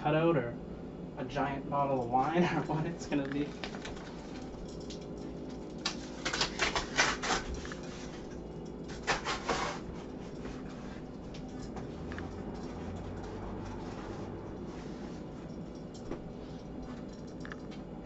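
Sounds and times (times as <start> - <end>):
box knife slicing cardboard: 9.0 - 9.9.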